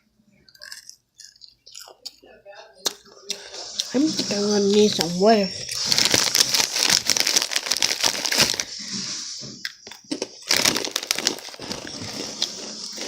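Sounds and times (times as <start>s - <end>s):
chip bag crinkling: 3.4s - 8.8s, 9.8s - 13.0s.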